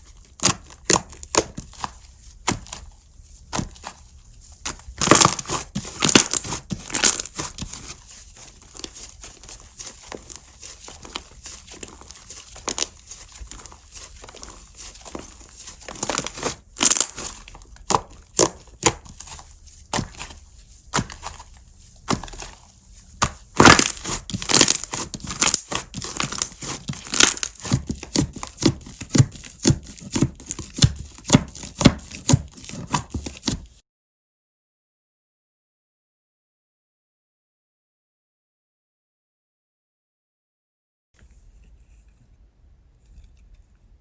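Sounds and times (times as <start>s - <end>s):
slime squishing with wet pops: 0.1s - 33.7s.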